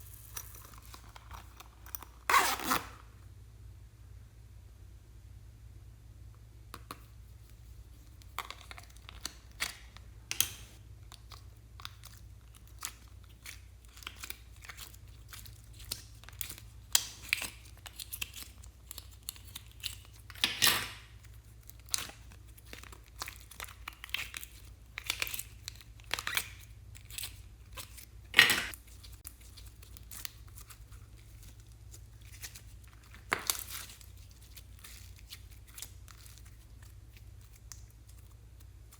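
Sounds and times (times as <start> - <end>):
slime crackling and popping: 11.1 - 38.7.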